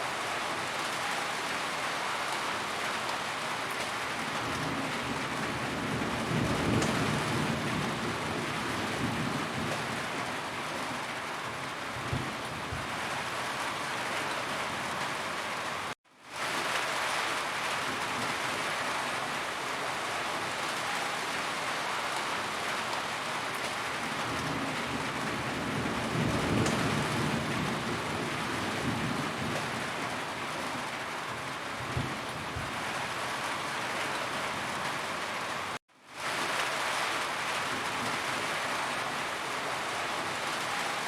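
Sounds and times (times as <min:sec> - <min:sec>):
rain falling on a roof: 0:00.0 - 0:41.0
distant thunder rumble: 0:24.1 - 0:30.2, 0:31.8 - 0:32.9.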